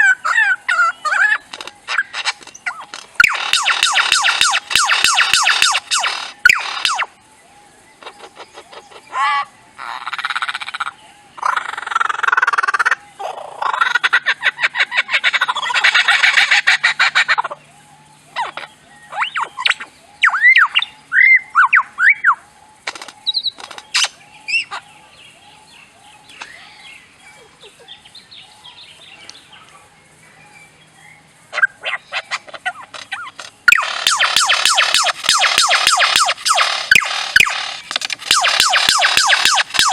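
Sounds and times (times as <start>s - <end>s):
lyrebird singing: 0.0s - 39.9s
rapid bird clicks: 22.8s - 24.2s, 32.9s - 39.9s
loud noisy bird bursts: 33.6s - 39.9s.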